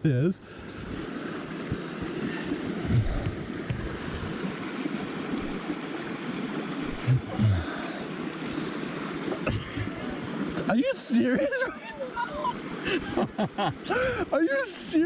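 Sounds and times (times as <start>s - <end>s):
stream running: 0.0s - 15.0s
wind buffeting microphone: 0.6s - 5.8s.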